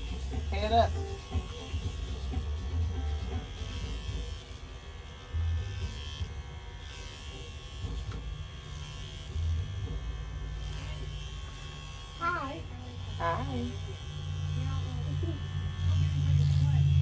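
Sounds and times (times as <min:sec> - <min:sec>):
electric hair clippers buzzing: 0:00.0 - 0:17.0.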